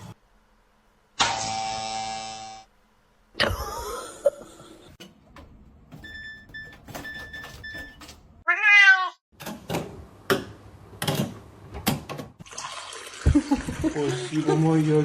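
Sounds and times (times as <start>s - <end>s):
cat meowing: 8.5s - 9.2s.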